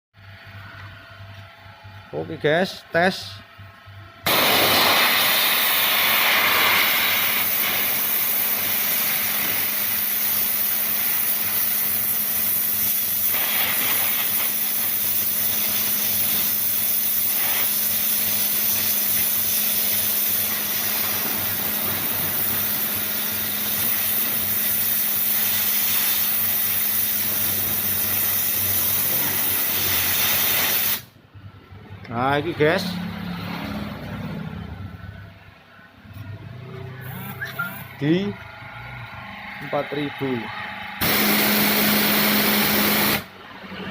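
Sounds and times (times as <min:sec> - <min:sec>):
high-pressure water spraying: 0:04.3 - 0:31.1, 0:41.0 - 0:43.3.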